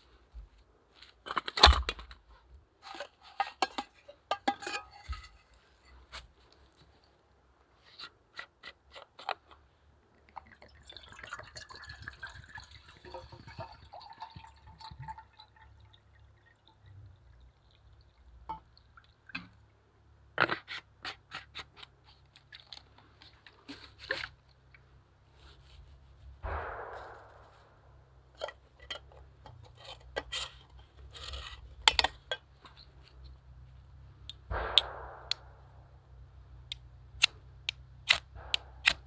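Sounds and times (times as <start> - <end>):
water pouring: 10.4 - 19.4
sharp scrapes and clicks: 26.4 - 32.9, 36.7 - 39.0.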